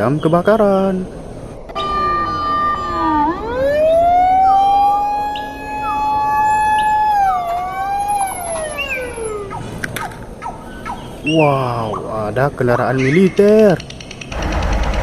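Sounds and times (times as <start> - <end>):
fire engine siren wailing: 1.7 - 11.0.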